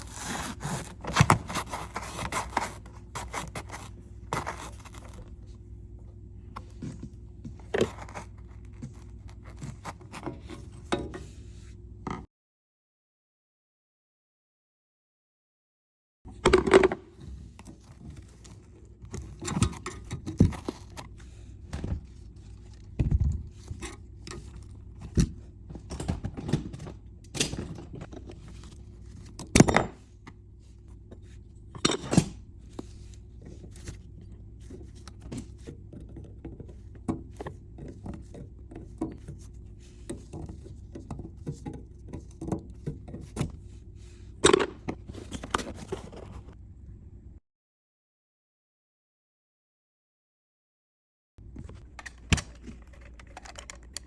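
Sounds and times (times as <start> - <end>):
steady low hum: 0.0 - 12.2
plumbing parts knocking and scraping: 34.6 - 43.8.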